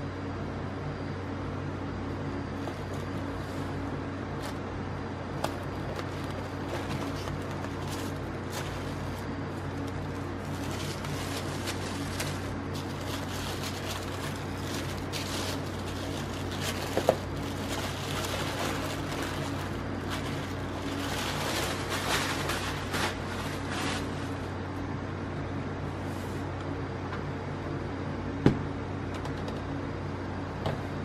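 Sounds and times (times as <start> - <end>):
low machine hum: 0.0 - 31.0
handling clicks and rustles: 5.3 - 24.1.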